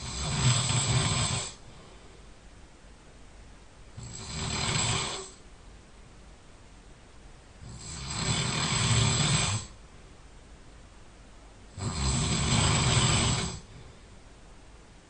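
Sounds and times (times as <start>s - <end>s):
person snoring loudly: 0.0s - 1.6s, 4.0s - 5.4s, 7.6s - 9.8s, 11.7s - 13.7s.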